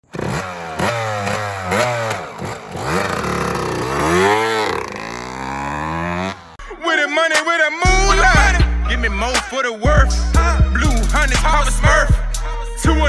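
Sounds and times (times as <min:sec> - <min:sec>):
dirt bike engine revving: 0:00.0 - 0:06.6.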